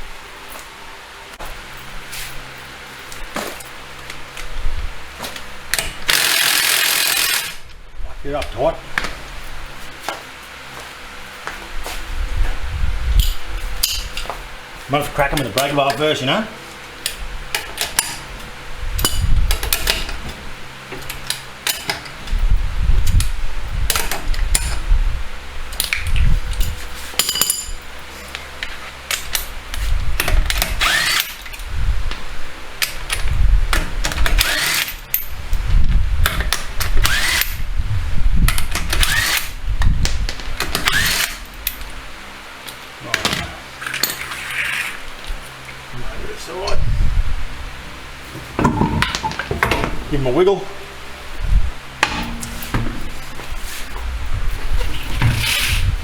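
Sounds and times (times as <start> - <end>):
impact wrench whining: 5.7 - 7.6, 30.6 - 31.5, 34.3 - 35.0, 37.0 - 37.6, 38.8 - 39.6, 40.7 - 41.4.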